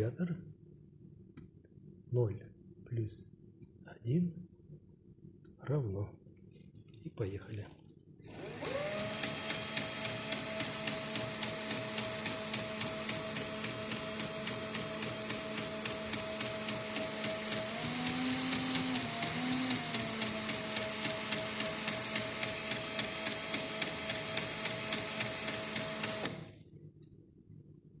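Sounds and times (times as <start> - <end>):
drill motor spinning: 8.2 - 26.6.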